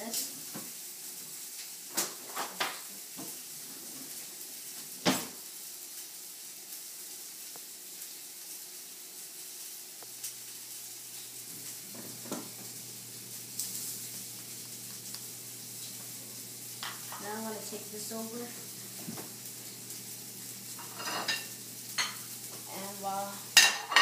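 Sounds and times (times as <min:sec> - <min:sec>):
food sizzling: 0:00.0 - 0:24.0
kitchen utensils knocking: 0:23.6 - 0:24.0.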